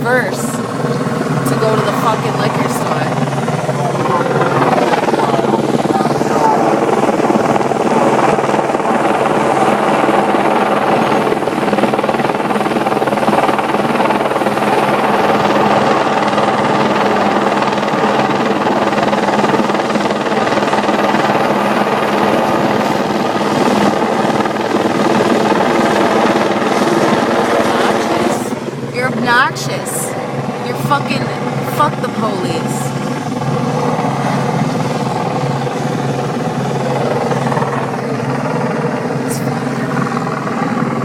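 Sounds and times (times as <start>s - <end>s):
helicopter flying overhead: 0.0s - 41.0s.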